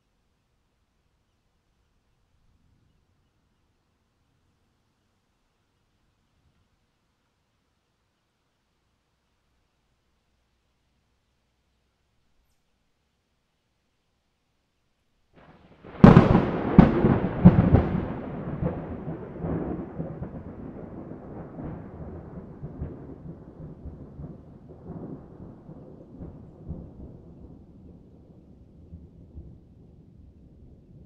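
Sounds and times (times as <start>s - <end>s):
thunder cracks and rumble: 15.8s - 31.0s.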